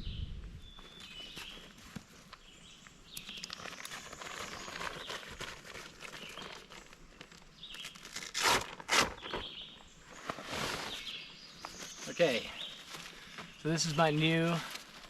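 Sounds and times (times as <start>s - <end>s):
rustling of camping gear: 0.4s - 15.0s
footsteps on forest floor: 0.6s - 15.0s
small clicks and crinkles: 0.8s - 8.4s.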